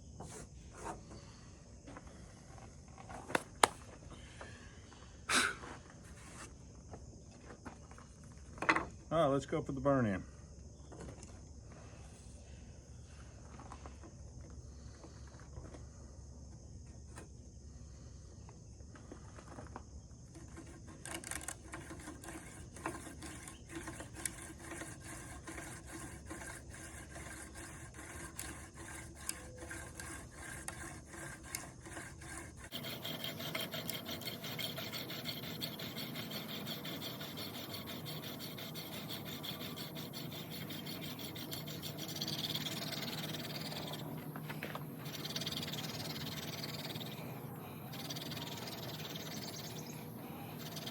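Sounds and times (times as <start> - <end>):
wood rasping on wood: 20.6 - 50.9.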